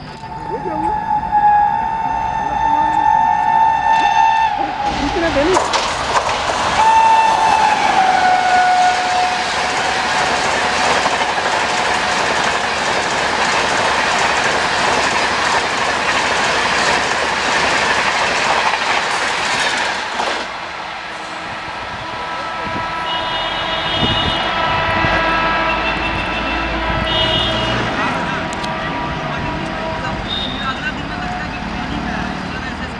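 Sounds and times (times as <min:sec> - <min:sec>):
train horn: 0:00.9 - 0:05.4, 0:06.8 - 0:11.3, 0:21.2 - 0:31.6
train wheels rushing on rails: 0:02.8 - 0:32.9.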